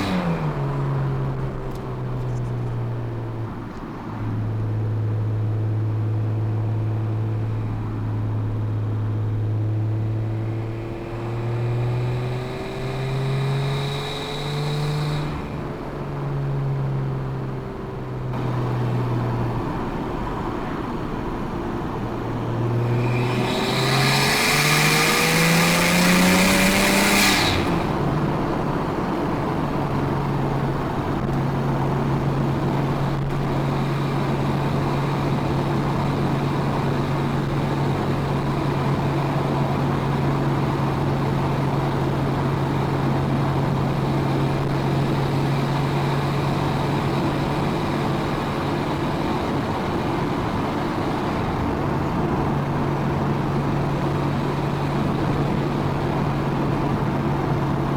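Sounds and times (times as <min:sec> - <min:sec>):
car engine revving: 0:09.2 - 0:16.7, 0:18.3 - 0:31.1.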